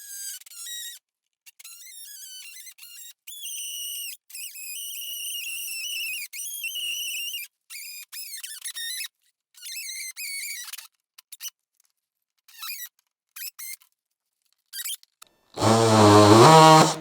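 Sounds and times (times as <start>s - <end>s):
reciprocating saw cutting plastic: 15.6s - 17.0s.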